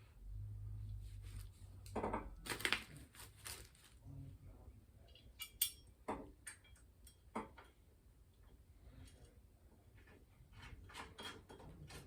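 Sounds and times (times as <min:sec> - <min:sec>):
light metal clinks and knocks: 0:05.1 - 0:07.8.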